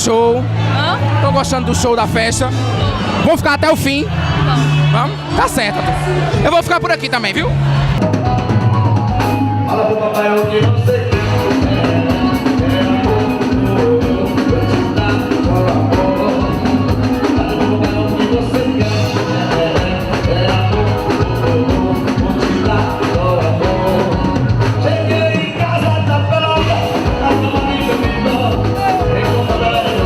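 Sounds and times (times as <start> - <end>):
band music: 0.0 - 30.0
person singing: 9.4 - 30.0
drum beat: 11.1 - 25.5.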